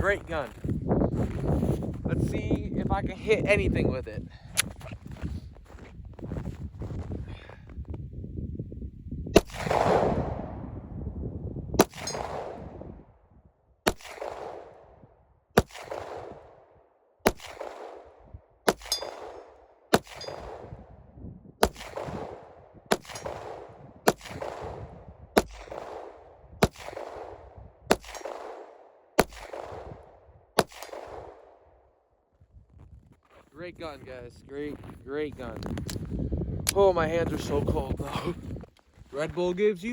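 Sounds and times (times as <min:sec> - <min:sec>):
pistol shots with echo: 0:09.4 - 0:10.6, 0:11.8 - 0:12.8, 0:13.8 - 0:14.9, 0:15.6 - 0:16.6, 0:17.2 - 0:20.8, 0:21.6 - 0:31.6.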